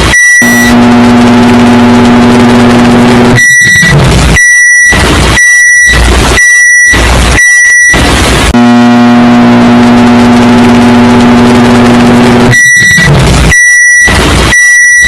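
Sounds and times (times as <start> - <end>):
microwave oven humming: 0.0 - 3.3
microwave high beeps: 0.0 - 8.0, 9.6 - 15.0.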